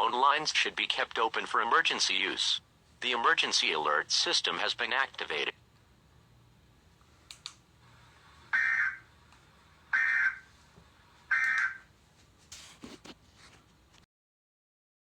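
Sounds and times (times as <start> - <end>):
faint clicks: 7.3 - 7.6.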